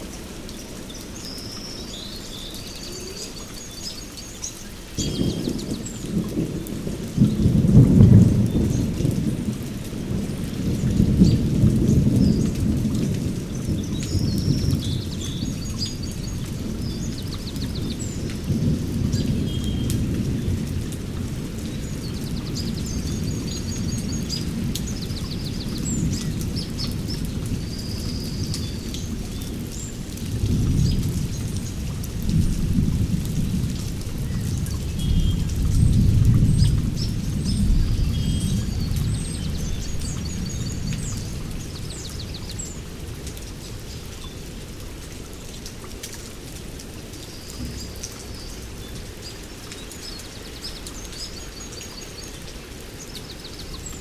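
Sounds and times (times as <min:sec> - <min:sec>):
steady rain: 0:00.0 - 0:54.0
thunder rumbling: 0:05.0 - 0:43.1.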